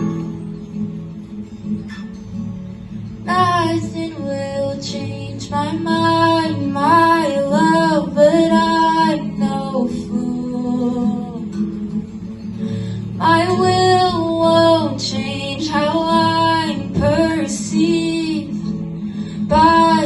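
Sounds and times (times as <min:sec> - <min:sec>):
acoustic guitar: 0:00.0 - 0:20.0
woman singing: 0:03.2 - 0:11.6, 0:13.1 - 0:20.0.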